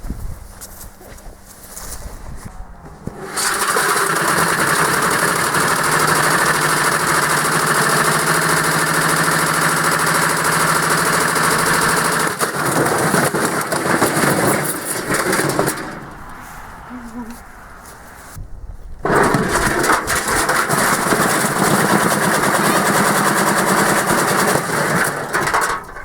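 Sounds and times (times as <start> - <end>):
washing machine spinning: 2.9 - 13.0.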